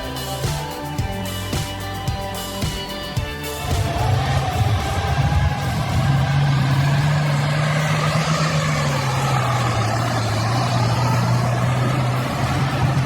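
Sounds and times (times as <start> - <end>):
heavy machinery engine running: 3.2 - 13.0.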